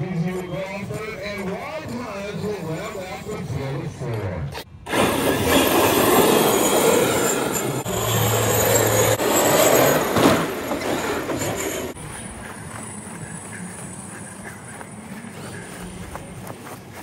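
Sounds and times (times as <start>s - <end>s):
rc truck motors racing: 4.9s - 14.9s.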